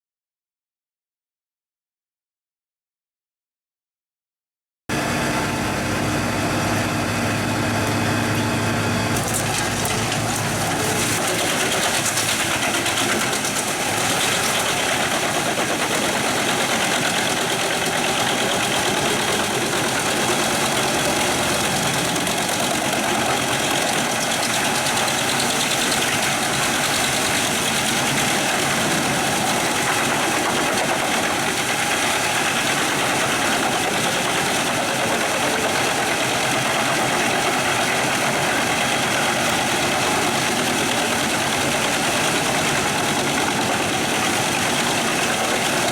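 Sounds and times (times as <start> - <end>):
wood chipper running: 4.9 - 45.9.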